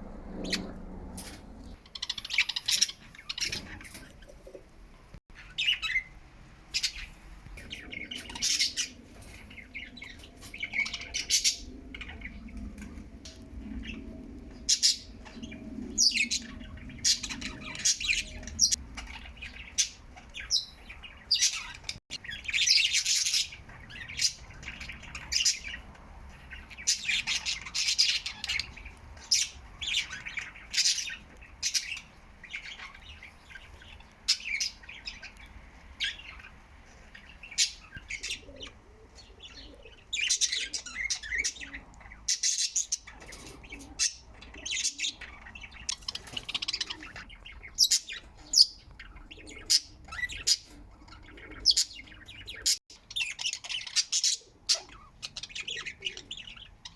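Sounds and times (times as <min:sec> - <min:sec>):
budgies chirping and chattering: 0:00.4 - 0:04.6, 0:05.3 - 0:56.9.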